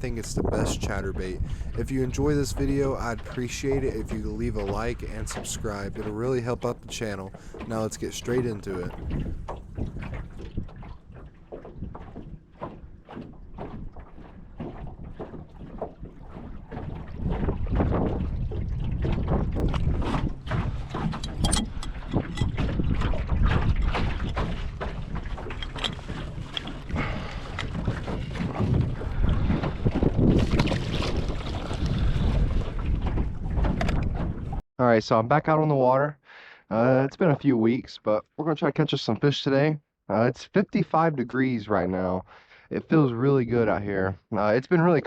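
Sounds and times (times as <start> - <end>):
strong wind buffeting microphone: 0.0 - 12.3, 14.9 - 34.6.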